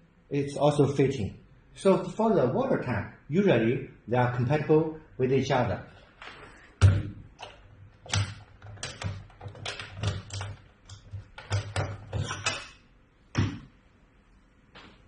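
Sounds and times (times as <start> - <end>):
plastic parts clicking and knocking: 6.8 - 12.8.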